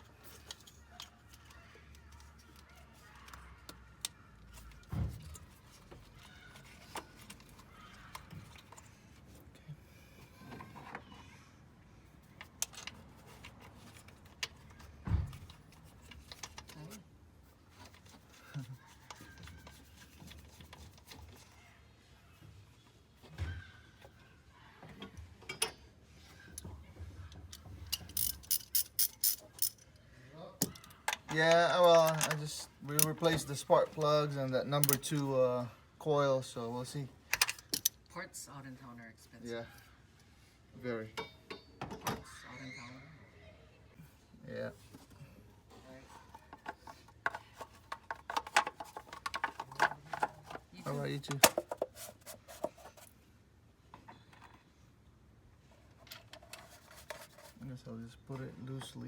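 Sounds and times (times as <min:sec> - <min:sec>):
hand tools clicking and knocking: 0:27.3 - 0:29.9, 0:46.3 - 0:50.7
ratchet wrench clicking: 0:28.0 - 0:29.8.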